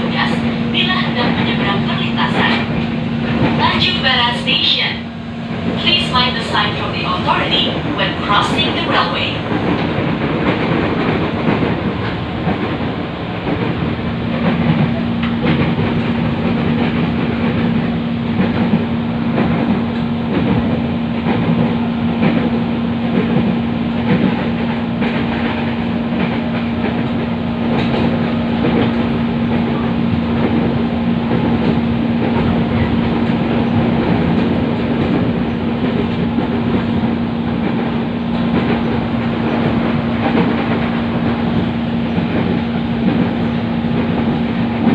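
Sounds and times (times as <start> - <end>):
train rumble and rattle: 0.0 - 44.9.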